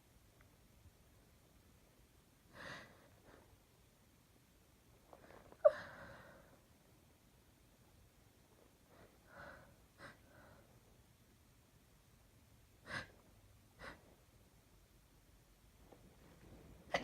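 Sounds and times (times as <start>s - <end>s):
woman breathing faintly: 5.1s - 6.8s.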